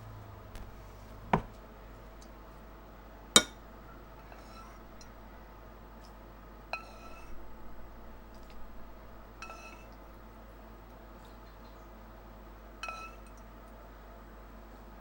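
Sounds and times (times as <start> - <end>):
glassware clinking: 3.4 - 3.6.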